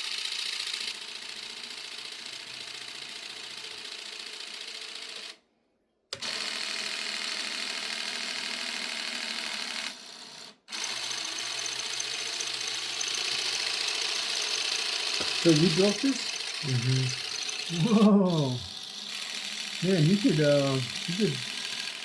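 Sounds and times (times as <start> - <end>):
electric motors whirring: 10.7 - 22.0.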